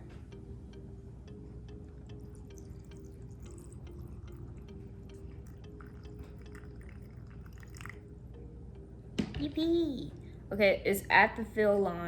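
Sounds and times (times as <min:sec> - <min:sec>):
water dripping into a cup: 0:02.0 - 0:08.2.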